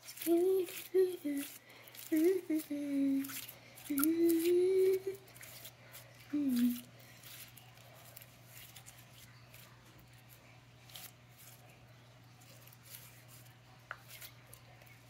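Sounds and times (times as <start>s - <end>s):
slime clicking and crackling: 0.0s - 11.6s
low steady hum: 0.0s - 15.0s.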